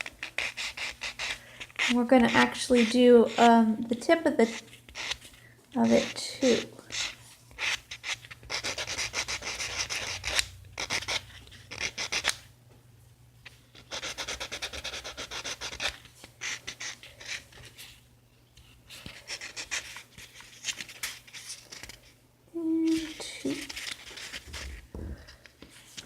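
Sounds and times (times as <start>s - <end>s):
nail buffer rasping on nail: 0.0s - 3.6s.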